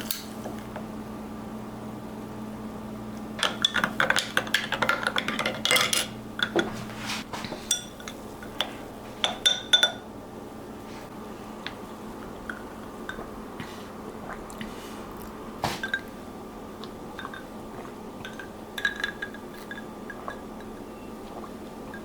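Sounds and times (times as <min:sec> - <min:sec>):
dishes and cutlery clattering: 0:03.4 - 0:06.9.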